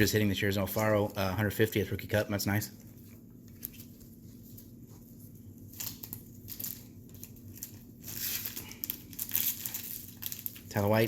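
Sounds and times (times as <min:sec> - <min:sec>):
card wrappers crinkling: 0:02.6 - 0:11.0.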